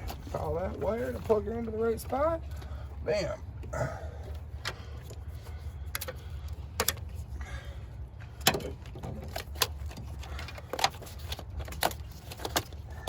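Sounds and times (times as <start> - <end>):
sharp clicks and light knocks: 5.8 - 7.2, 8.2 - 13.0.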